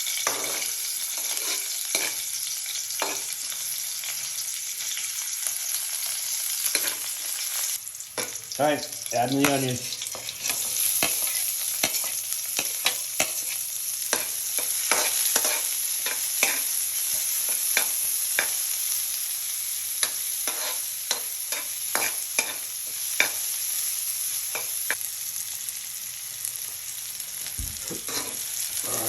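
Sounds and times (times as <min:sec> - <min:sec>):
onion sizzling in hot oil: 0:00.0 - 0:29.0
utensil scraping a pan: 0:00.2 - 0:02.2, 0:09.4 - 0:13.6, 0:20.5 - 0:20.8, 0:27.9 - 0:28.5.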